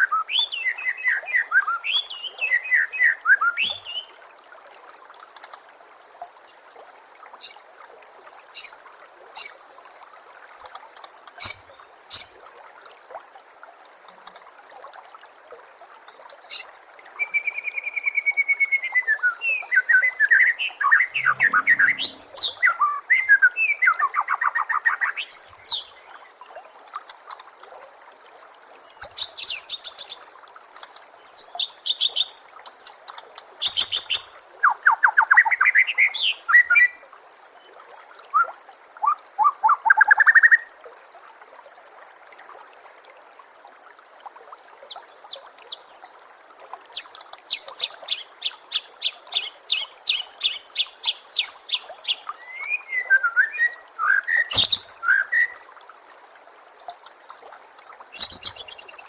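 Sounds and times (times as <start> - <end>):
water trickling: 0.0 - 59.0
bird singing clear whistles: 17.2 - 24.0, 52.4 - 55.6, 58.2 - 59.0.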